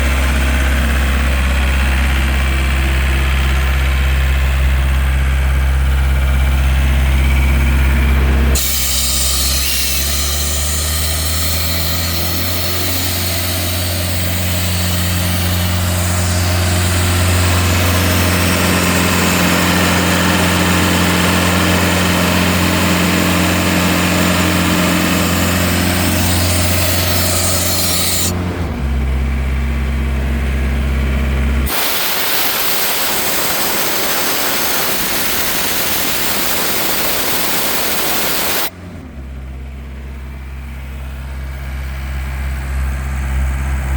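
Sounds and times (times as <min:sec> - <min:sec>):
diesel engine idling: 0:00.0 - 0:43.9
compressed air rushing: 0:23.5 - 0:28.4, 0:31.7 - 0:38.7.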